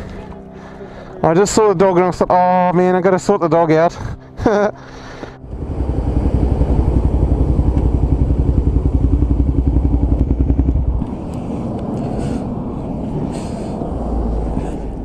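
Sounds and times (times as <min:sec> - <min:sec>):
motorcycle engine running: 0:05.4 - 0:12.1.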